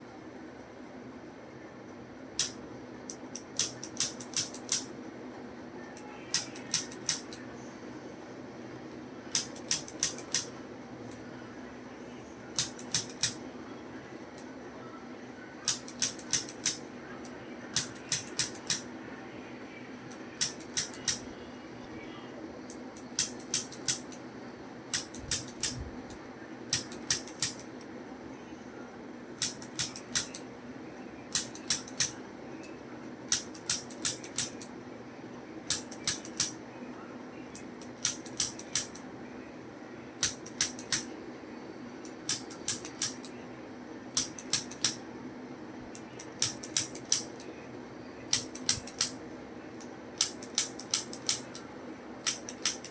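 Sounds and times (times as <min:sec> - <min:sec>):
steady low hum: 0:00.0 - 0:52.9
adjusting instrument sharp clicks: 0:29.4 - 0:30.4, 0:44.2 - 0:45.0, 0:48.3 - 0:49.2, 0:50.2 - 0:51.6.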